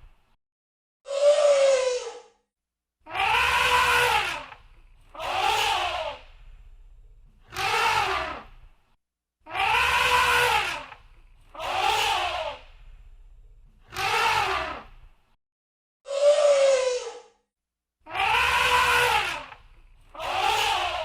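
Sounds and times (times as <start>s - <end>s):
elephant trumpeting: 3.1s - 6.2s, 9.5s - 12.6s, 13.9s - 14.8s, 18.1s - 19.6s, 20.2s - 21.0s.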